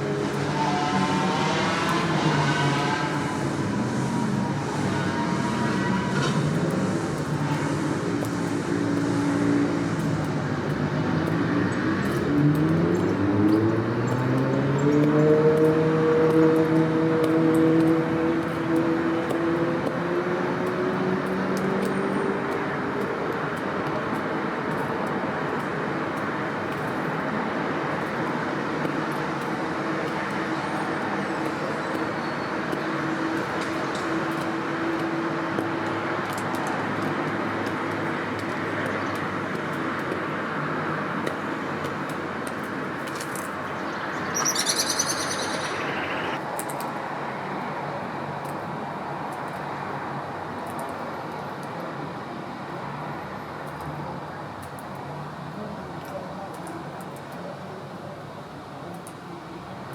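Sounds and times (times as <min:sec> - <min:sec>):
road traffic: 0:00.0 - 0:54.4
vehicle engine hum: 0:42.6 - 0:46.4
small birds chirping: 0:43.1 - 0:46.4
loud bird call: 0:43.7 - 0:46.4.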